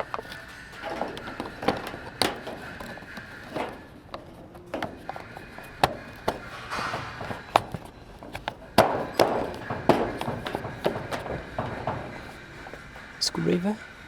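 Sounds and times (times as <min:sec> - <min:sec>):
pipes and tools knocking: 0:00.0 - 0:13.2.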